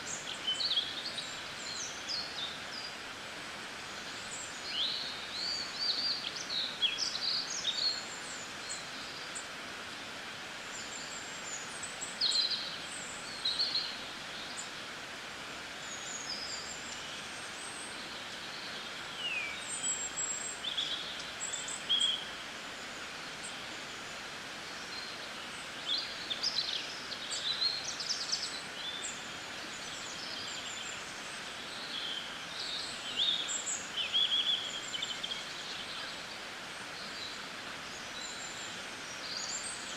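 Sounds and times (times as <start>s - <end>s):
steady background hiss: 0.0s - 39.9s
small birds chirping: 15.7s - 39.9s.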